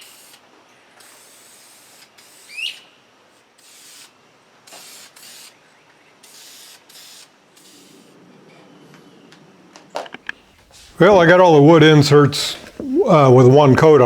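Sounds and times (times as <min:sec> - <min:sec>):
aerosol can spraying: 0:03.6 - 0:05.6, 0:06.2 - 0:08.0.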